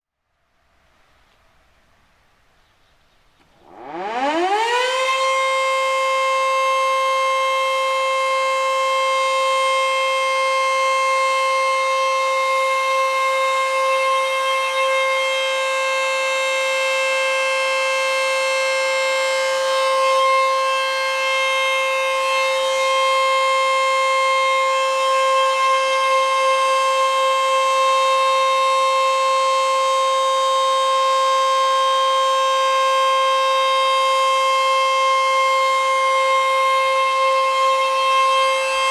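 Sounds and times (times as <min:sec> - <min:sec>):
warning siren steady tone: 0:03.4 - 0:38.9.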